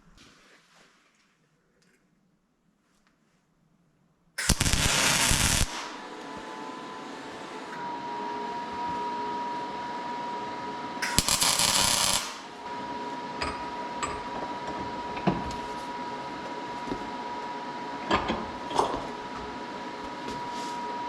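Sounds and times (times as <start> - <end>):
welding arc crackling: 4.4 - 6.0, 11.0 - 12.6.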